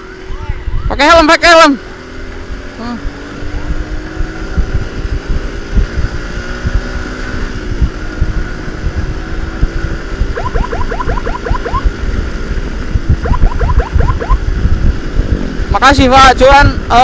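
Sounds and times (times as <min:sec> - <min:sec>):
motorcycle engine rumble: 0:01.8 - 0:15.7
wind on microphone: 0:03.1 - 0:15.8
siren yelping: 0:10.2 - 0:11.9, 0:13.1 - 0:14.4.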